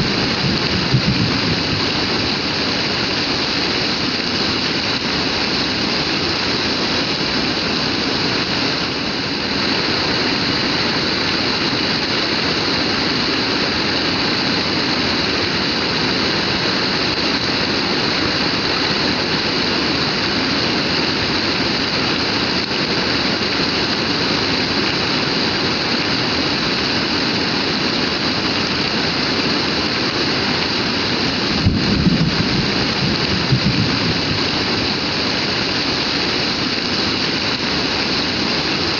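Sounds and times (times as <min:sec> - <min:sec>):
heavy rain pouring: 0:00.0 - 0:38.9.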